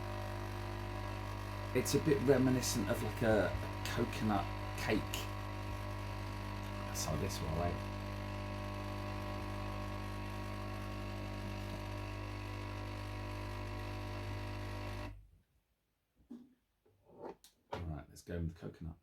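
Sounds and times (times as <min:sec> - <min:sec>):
coffee machine pump humming: 0:00.0 - 0:15.2.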